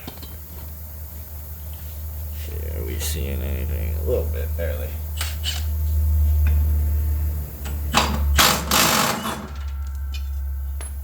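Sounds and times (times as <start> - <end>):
low hum: 9.4 - 11.0.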